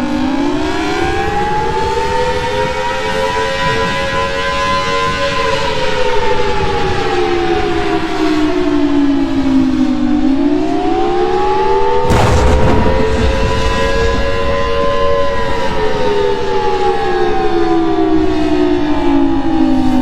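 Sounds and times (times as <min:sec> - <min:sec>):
burst of rushing noise: 0:12.1 - 0:15.5
low rumble: 0:12.1 - 0:15.5.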